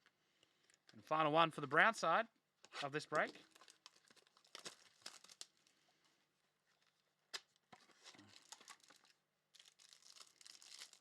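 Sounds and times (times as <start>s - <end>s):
wrapper crinkling and tearing: 3.1s - 5.8s, 7.8s - 11.0s.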